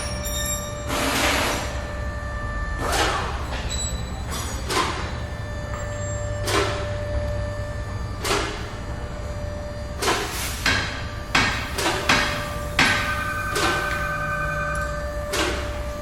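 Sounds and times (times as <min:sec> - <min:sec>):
steady low hum: 0:00.0 - 0:16.0
ringing knocks or strikes: 0:10.7 - 0:15.6.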